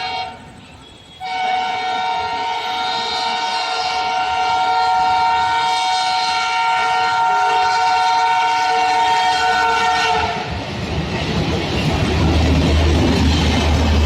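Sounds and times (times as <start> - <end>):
locomotive air horn blast: 0.0 - 10.5
rumble of moving train: 0.0 - 14.0.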